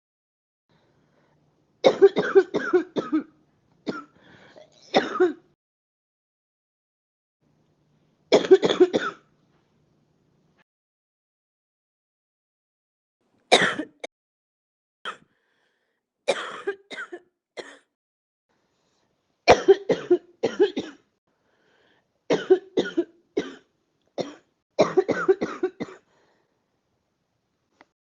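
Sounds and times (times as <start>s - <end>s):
person coughing: 1.9s - 3.3s, 3.9s - 5.4s, 8.4s - 9.2s, 13.5s - 14.1s, 16.3s - 17.9s, 19.5s - 21.0s, 22.3s - 26.1s.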